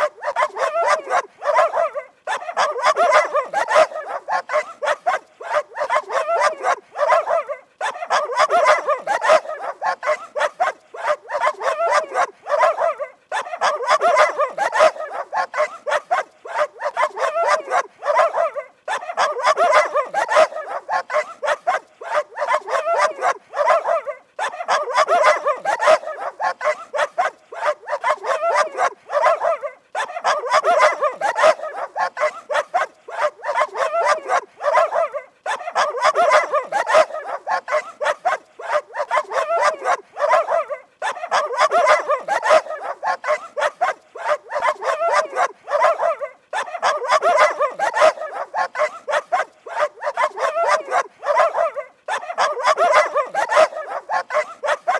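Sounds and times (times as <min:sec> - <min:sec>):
dog barking: 0:00.0 - 0:54.9.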